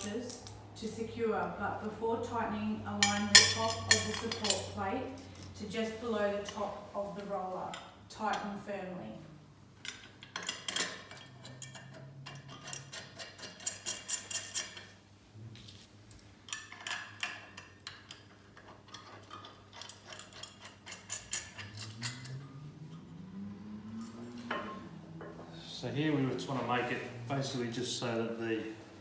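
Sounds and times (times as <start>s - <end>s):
metal clicks and clinks of tools: 0.0s - 1.0s, 3.0s - 5.6s, 9.8s - 15.0s, 16.1s - 22.4s
bolts being tightened: 9.8s - 14.9s, 16.1s - 22.5s.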